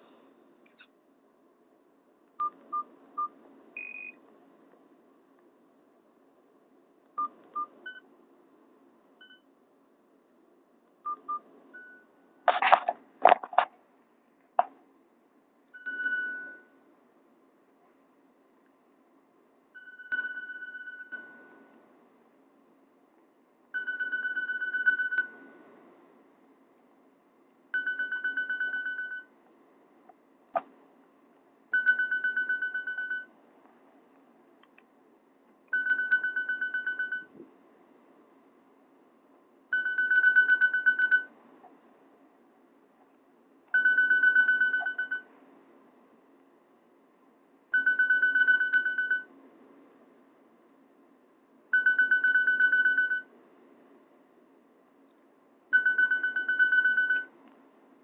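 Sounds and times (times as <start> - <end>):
high pulsing ringtone: 23.8 - 25.5, 27.8 - 29.3, 31.8 - 33.3, 35.8 - 37.3, 39.7 - 41.3, 43.8 - 45.3, 47.8 - 49.3, 51.8 - 53.3, 55.8 - 57.3.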